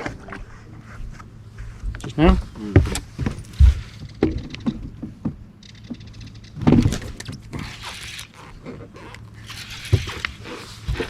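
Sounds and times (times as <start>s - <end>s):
rod and gear knocking: 2.8s - 11.0s.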